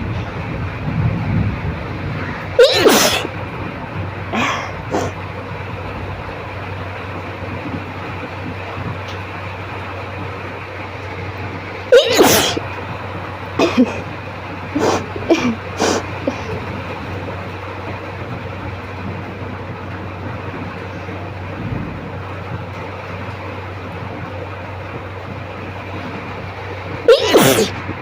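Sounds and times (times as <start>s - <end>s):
person sneezing: 2.6s - 3.3s, 12.0s - 12.6s, 14.8s - 16.4s, 27.1s - 27.8s.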